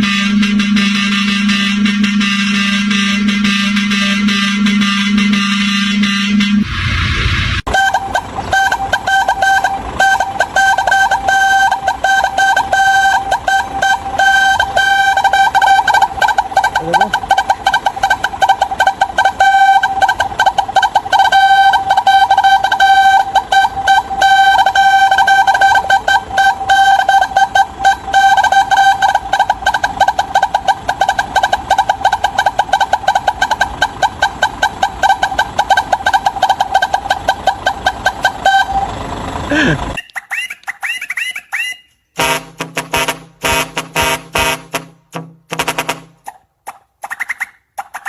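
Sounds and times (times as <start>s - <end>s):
second horn: 0.0s - 15.9s, 42.2s - 46.2s
warbling truck horn: 0.0s - 46.4s.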